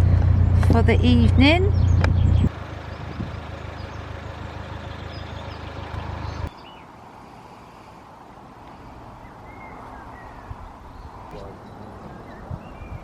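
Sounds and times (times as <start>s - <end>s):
boat engine humming: 0.0s - 8.1s.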